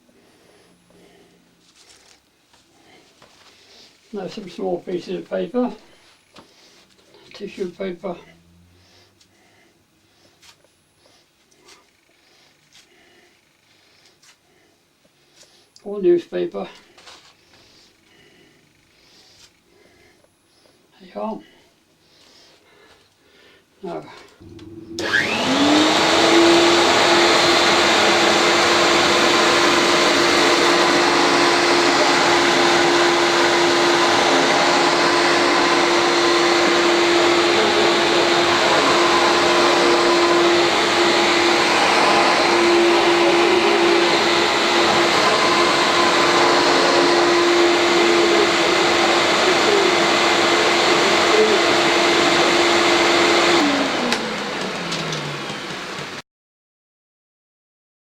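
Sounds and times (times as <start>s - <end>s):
vacuum cleaner whining: 0.0s - 13.5s, 23.8s - 56.2s.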